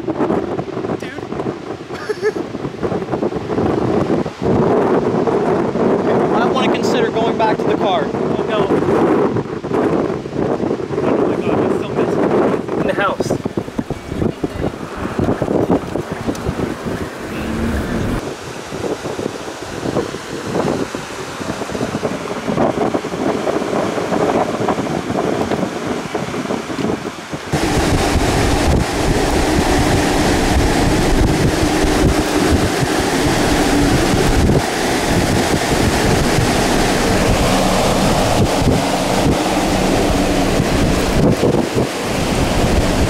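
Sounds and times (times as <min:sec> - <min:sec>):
wind blasting microphone: 0:00.0 - 0:43.0.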